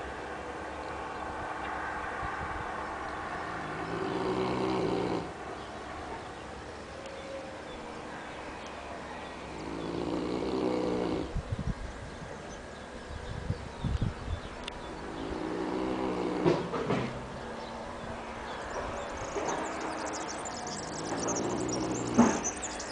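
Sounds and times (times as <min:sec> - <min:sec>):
dog snoring loudly: 0:03.9 - 0:05.3, 0:09.6 - 0:11.3, 0:15.2 - 0:16.7.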